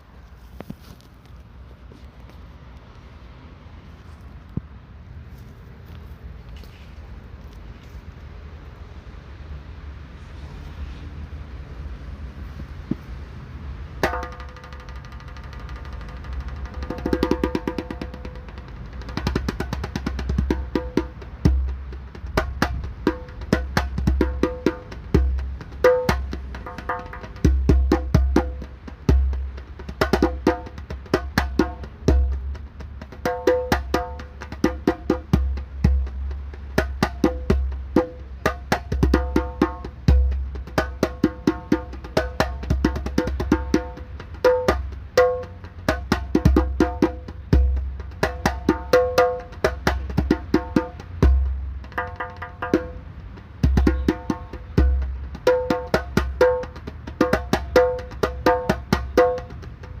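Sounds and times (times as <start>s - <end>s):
bus engine rumble: 0.0s - 33.2s, 35.3s - 60.0s
djembe drumming: 14.0s - 60.0s.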